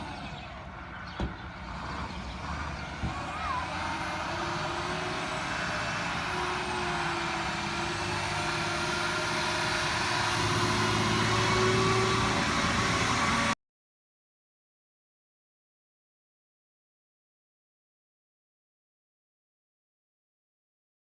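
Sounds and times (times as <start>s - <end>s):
fire truck engine running: 0.0s - 13.6s.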